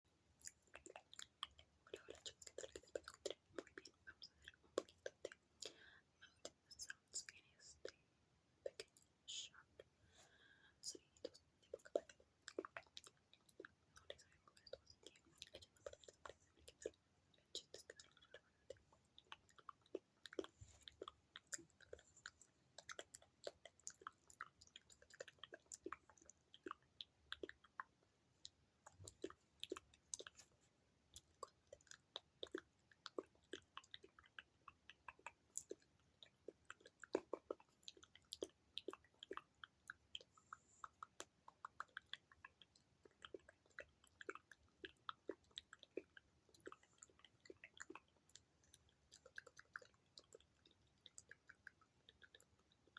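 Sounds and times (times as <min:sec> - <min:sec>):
wet lip smacks: 0:00.4 - 0:07.3, 0:11.0 - 0:52.9
tongue clicks: 0:10.8 - 0:30.4, 0:31.1 - 0:52.9.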